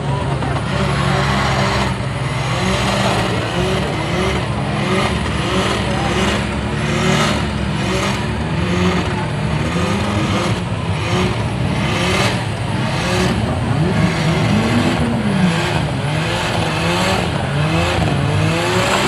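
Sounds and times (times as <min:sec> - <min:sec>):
loud car engine running: 0:00.0 - 0:19.0
people's voices: 0:00.0 - 0:19.0.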